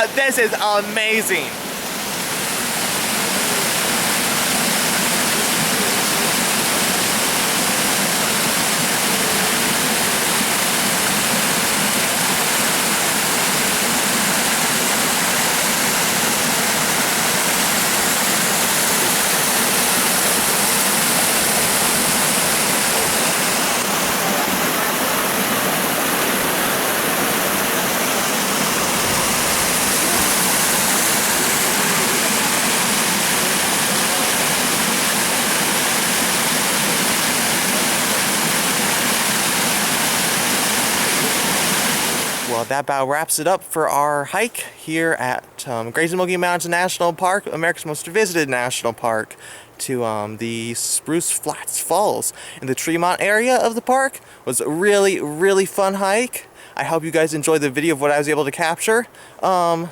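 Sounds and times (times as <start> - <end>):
waterfall rushing loudly: 0.0 - 42.7.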